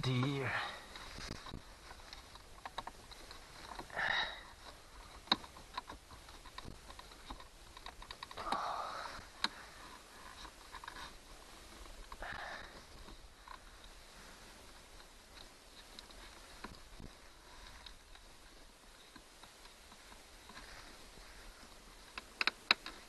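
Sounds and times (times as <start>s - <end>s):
small plastic clicks: 22.1s - 23.0s.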